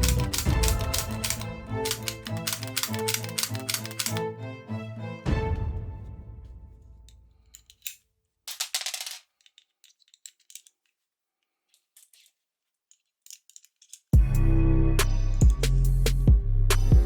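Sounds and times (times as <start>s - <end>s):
toy gun clicking: 0.0s - 4.2s
loud music with a beat: 14.2s - 17.0s.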